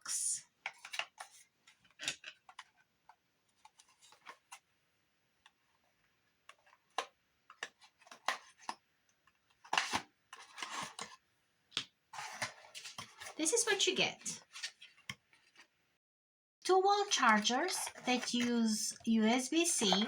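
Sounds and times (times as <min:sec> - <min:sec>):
packaging rustling: 0:09.5 - 0:11.2, 0:12.2 - 0:13.8, 0:14.4 - 0:15.7, 0:17.2 - 0:18.8.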